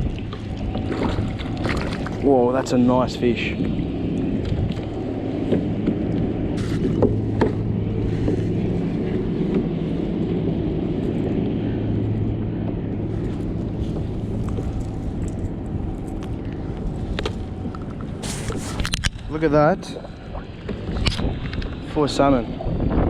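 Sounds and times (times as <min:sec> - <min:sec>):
low engine drone: 0:00.0 - 0:23.0.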